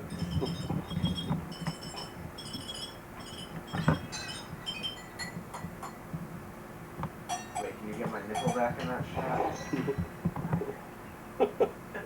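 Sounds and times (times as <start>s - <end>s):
tinkling chime-like clinks: 0.1s - 5.4s.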